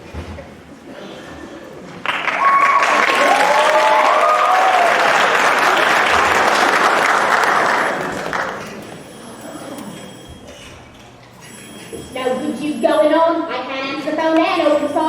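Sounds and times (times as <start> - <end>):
audience applauding: 2.0 - 9.1.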